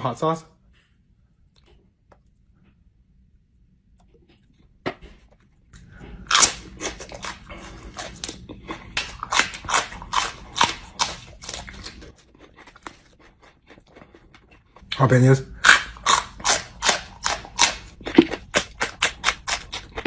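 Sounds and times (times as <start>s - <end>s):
person chewing crunchy food: 4.0s - 20.0s.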